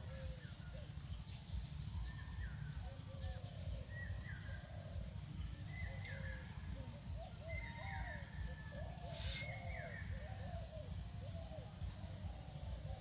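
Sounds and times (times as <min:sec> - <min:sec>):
birds chirping and whistling: 0:00.0 - 0:13.0.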